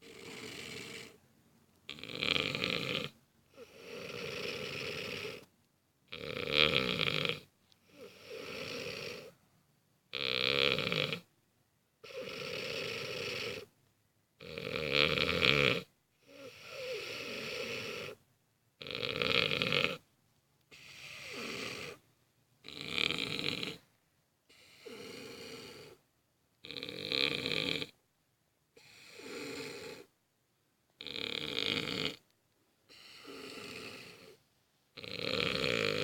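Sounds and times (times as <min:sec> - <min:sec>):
person snoring heavily: 0:00.0 - 0:01.2, 0:01.9 - 0:05.4, 0:06.1 - 0:09.3, 0:10.1 - 0:11.3, 0:12.0 - 0:13.7, 0:14.4 - 0:18.2, 0:18.8 - 0:20.0, 0:20.7 - 0:22.0, 0:22.6 - 0:23.8, 0:24.5 - 0:26.0, 0:26.6 - 0:28.0, 0:28.8 - 0:30.1, 0:31.0 - 0:32.2, 0:32.9 - 0:34.4, 0:35.0 - 0:36.0.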